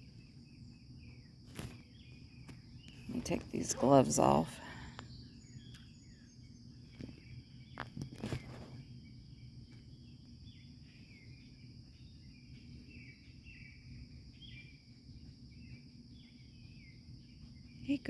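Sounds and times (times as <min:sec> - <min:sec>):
handling knocks and rustles: 0:07.0 - 0:08.9.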